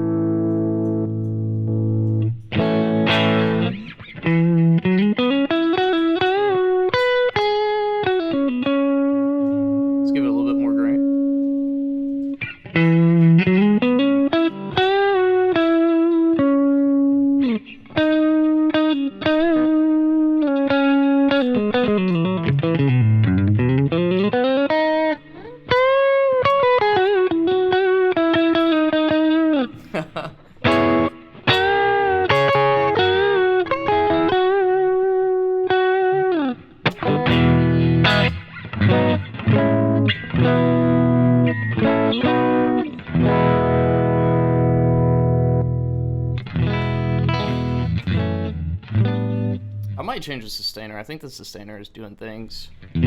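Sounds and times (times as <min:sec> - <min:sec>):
overdriven electric guitar: 0:00.0 - 0:50.0, 0:52.7 - 0:53.0.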